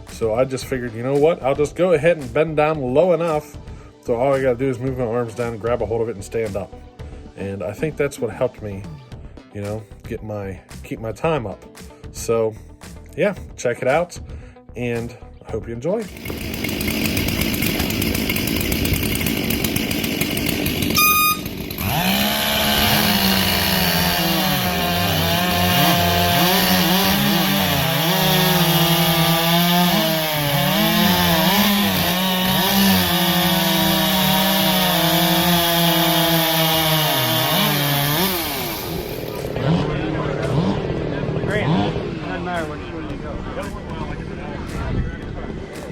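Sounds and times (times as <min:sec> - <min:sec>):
chainsaw cutting through wood: 0:16.0 - 0:43.8
short beep: 0:21.0 - 0:21.6.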